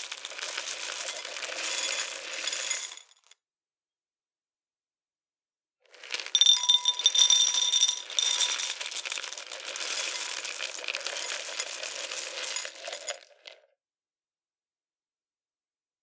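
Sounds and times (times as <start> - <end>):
cereal pouring into a bowl: 0.0 - 3.3, 5.9 - 13.7.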